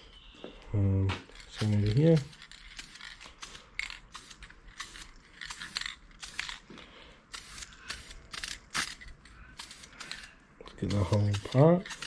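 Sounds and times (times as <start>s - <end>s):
aerosol spray hissing bursts: 1.6s - 6.5s, 7.3s - 8.5s, 9.5s - 12.0s.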